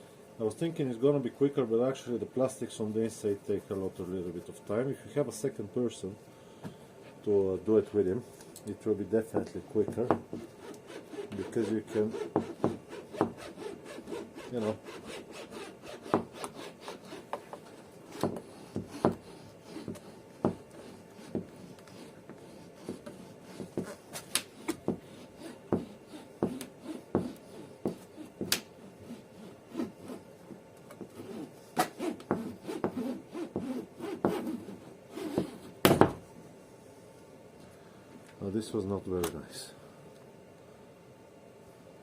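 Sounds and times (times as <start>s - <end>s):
wire sawing through glass: 10.4s - 30.2s.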